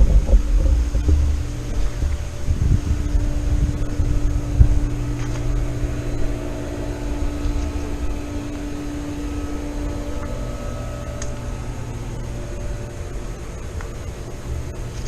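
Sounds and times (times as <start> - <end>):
dull thump: 0.0 - 3.1
low mechanical hum: 0.0 - 15.0
low rumble: 0.0 - 15.0.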